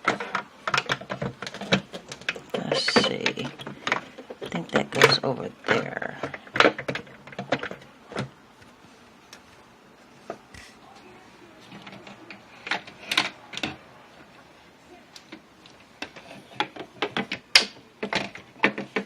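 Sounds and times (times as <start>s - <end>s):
clicks and knocks of parts: 0.0s - 8.7s, 11.6s - 13.8s, 15.1s - 19.0s.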